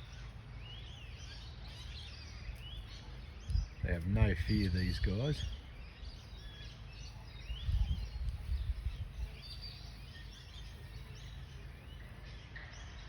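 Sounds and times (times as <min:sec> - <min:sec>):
wild birds chirping: 0:00.0 - 0:13.0
low rumbling on microphone: 0:02.6 - 0:12.2.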